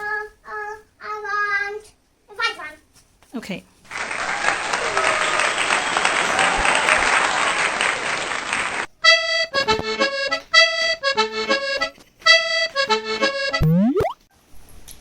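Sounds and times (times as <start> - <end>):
applause: 3.9 - 8.9
bouncy accordion-like tune: 9.0 - 13.9.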